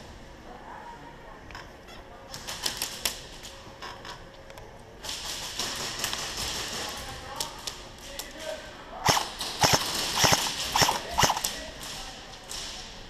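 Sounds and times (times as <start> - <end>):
airsoft gun shots: 9.0 - 11.6.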